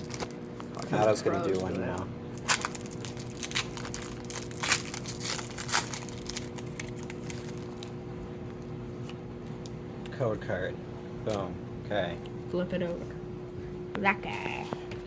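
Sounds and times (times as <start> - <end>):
foil wrapper crinkling and tearing: 0.0 - 8.0.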